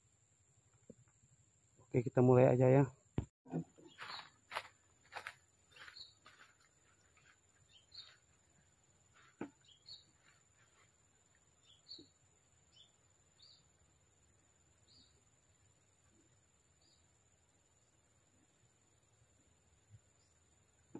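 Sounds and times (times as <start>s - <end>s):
faint high bird chirps: 3.5s - 19.0s.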